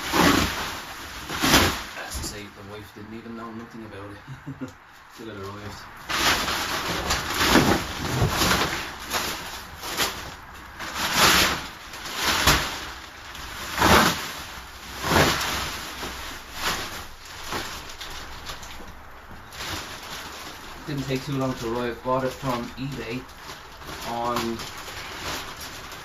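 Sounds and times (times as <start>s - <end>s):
plastic wrapping crinkling rips: 5.5s - 26.0s.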